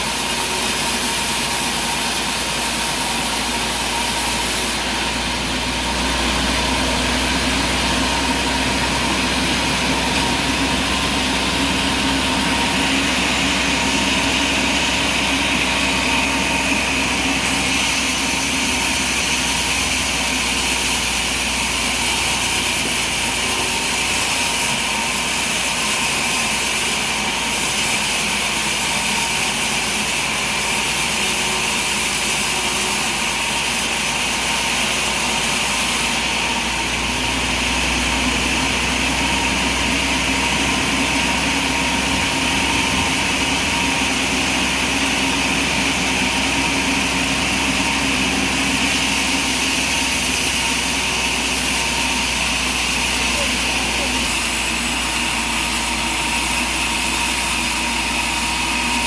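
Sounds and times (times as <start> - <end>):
sawmill machinery drone: 0.0 - 59.0.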